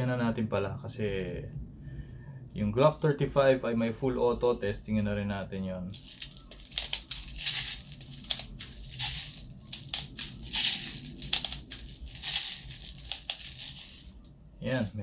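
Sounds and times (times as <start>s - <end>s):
plastic pellets rattling and clicking: 5.9s - 14.3s.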